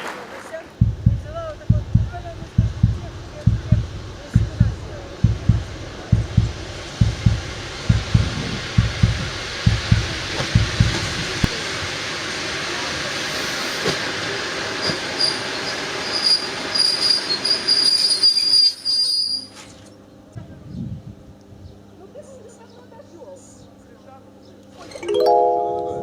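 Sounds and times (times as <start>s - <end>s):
train rumbling past: 0.1s - 17.7s
heavy low thumps: 0.7s - 11.5s
metal wheel squeal: 16.1s - 19.7s.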